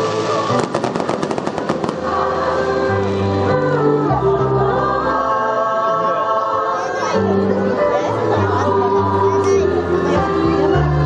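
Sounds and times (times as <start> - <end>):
fireworks crackling: 0.0 - 3.5
choir singing held notes: 0.0 - 11.0
music: 0.0 - 11.0.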